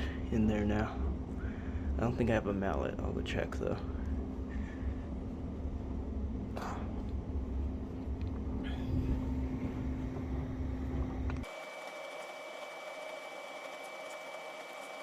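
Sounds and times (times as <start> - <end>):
faint high whine: 0.0 - 15.0
machine humming: 3.7 - 15.0.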